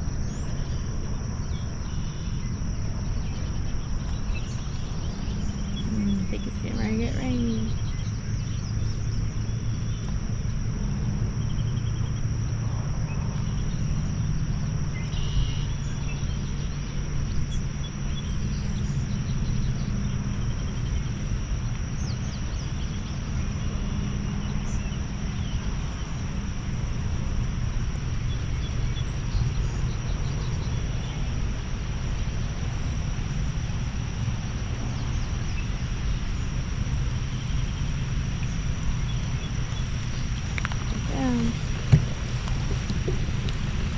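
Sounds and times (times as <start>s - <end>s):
insects droning: 0.0s - 43.9s
low steady rumble: 0.0s - 43.9s
background hiss: 32.8s - 43.9s.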